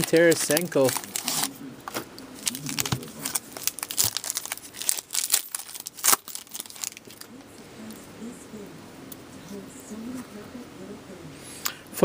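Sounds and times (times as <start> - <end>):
wrapping crinkling and tearing: 0.0 - 7.3.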